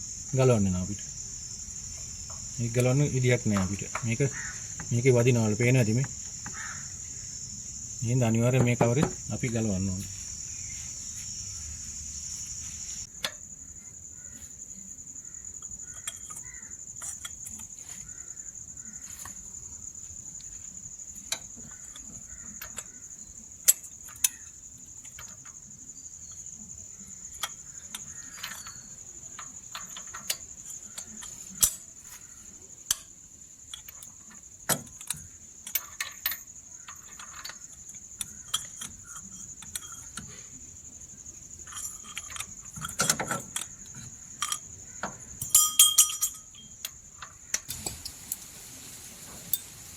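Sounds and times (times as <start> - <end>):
crickets chirring: 0.0 - 49.9
hand tools clicking and clinking: 27.4 - 32.1, 33.7 - 40.4, 41.6 - 48.5.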